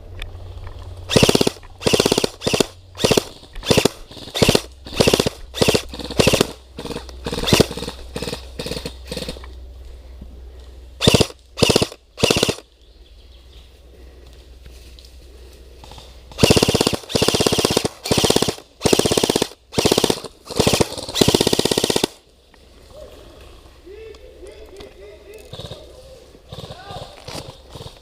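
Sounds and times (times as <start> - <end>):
airsoft rifle full-auto bursts: 1.1 - 9.4, 11.0 - 12.7, 16.3 - 22.2.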